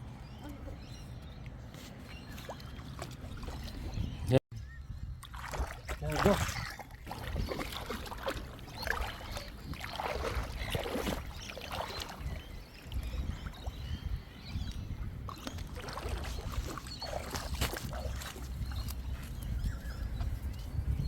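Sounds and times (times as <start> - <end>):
wind on microphone: 3.4 - 21.0
water splashing: 5.2 - 13.7, 15.3 - 18.9.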